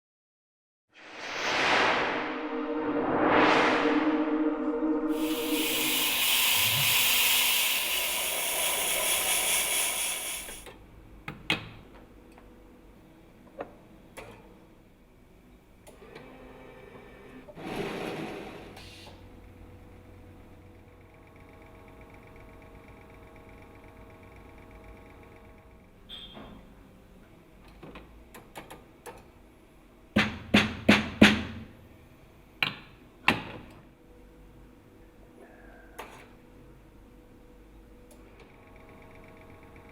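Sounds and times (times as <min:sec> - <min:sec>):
coffee machine steam hiss: 0:05.1 - 0:10.7.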